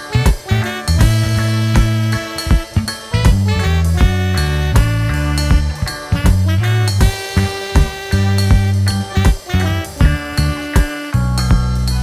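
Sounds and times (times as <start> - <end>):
upbeat swing jazz music: 0.0 - 12.0.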